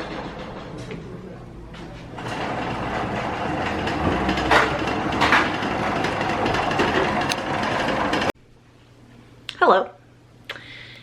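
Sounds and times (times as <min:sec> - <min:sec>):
vehicle rumbling and rattling: 0:00.0 - 0:08.4
loud clacks: 0:02.2 - 0:08.3.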